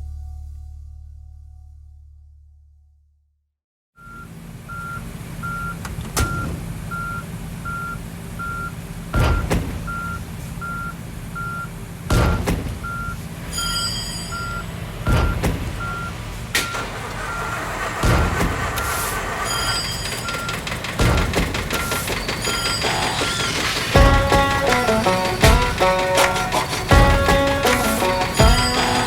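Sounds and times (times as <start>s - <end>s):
backup alarm beeping: 4.0s - 17.6s, 18.8s - 29.0s
diesel engine running: 4.2s - 13.6s, 14.4s - 29.0s
loud thumps: 9.1s - 10.0s, 12.1s - 13.1s, 15.1s - 17.0s, 18.0s - 19.0s, 20.4s - 29.0s.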